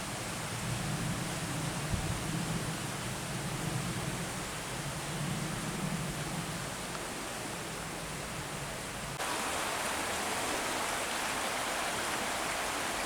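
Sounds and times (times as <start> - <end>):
river rushing through rocky gorge: 9.2 - 13.0.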